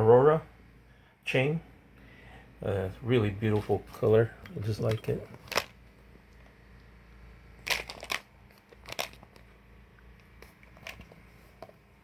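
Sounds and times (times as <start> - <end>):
small parts clicking and rattling: 4.8 - 5.8, 7.6 - 9.6.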